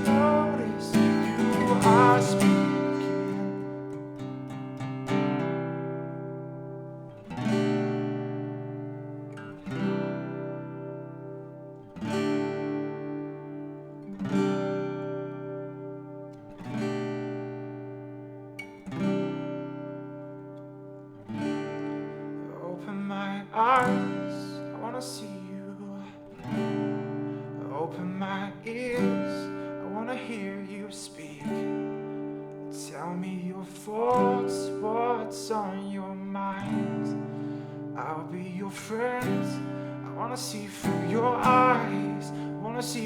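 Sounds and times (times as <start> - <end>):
wordless vocal line: 0.0 - 3.6, 32.8 - 43.0
acoustic guitar strummed chords: 0.0 - 43.0.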